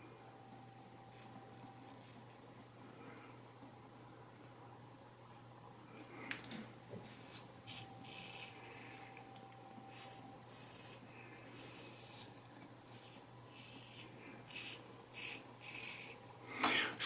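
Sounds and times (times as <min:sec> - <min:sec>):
razor scraping stubble: 0:00.6 - 0:02.4, 0:07.0 - 0:09.2, 0:09.8 - 0:16.2.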